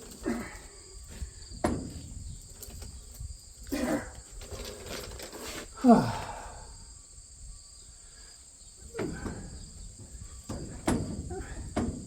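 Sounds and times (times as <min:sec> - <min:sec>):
crickets chirping: 0:00.0 - 0:12.0
sharp metal knocks: 0:01.6 - 0:02.1, 0:10.5 - 0:12.0.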